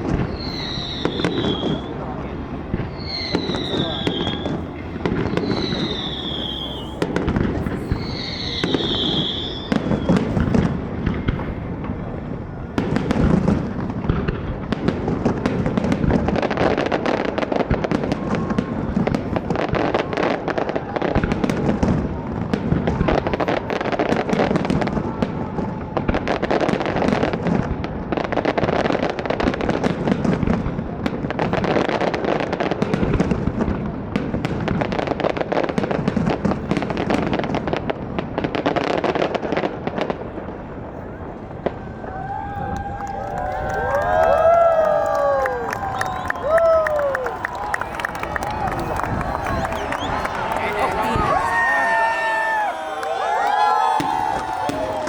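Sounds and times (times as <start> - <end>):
high firework whistle: 0.0 - 2.1, 2.9 - 11.4, 43.5 - 55.0
fireworks bangs and crackles: 0.0 - 55.0.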